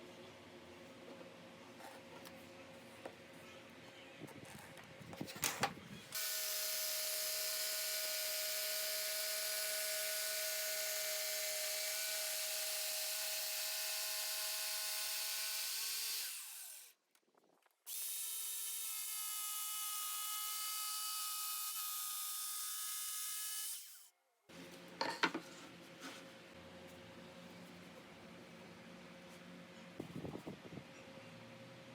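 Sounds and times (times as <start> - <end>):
power tool whining: 6.1 - 17.0, 17.9 - 24.1.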